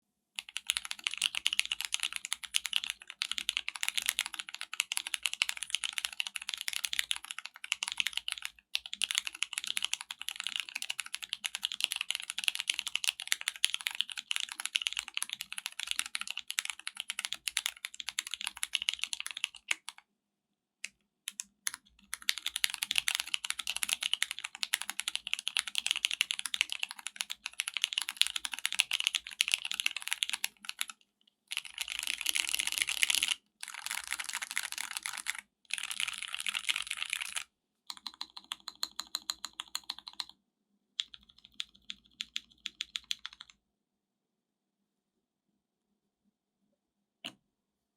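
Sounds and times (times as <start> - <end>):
fast mechanical keyboard typing: 0.4 - 20.0, 21.3 - 40.3, 41.0 - 43.5.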